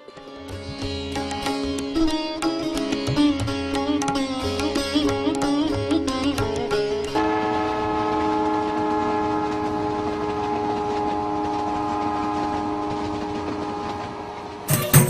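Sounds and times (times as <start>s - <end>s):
locomotive horn chord: 7.2s - 15.0s.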